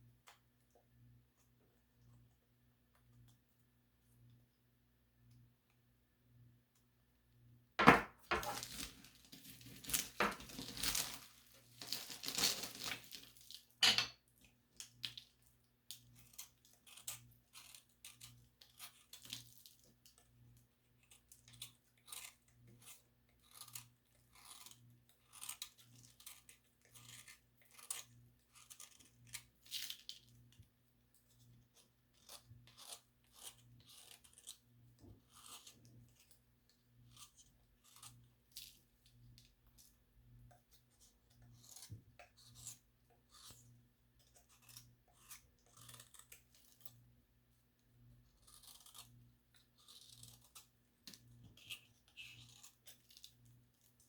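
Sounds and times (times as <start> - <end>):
plaster tiles crunching: 7.8 - 14.1.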